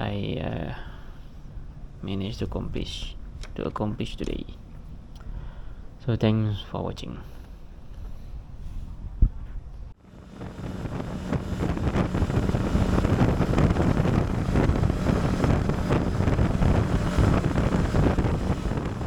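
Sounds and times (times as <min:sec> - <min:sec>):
wind buffeting microphone: 0:08.0 - 0:19.0
low engine drone: 0:10.0 - 0:19.0.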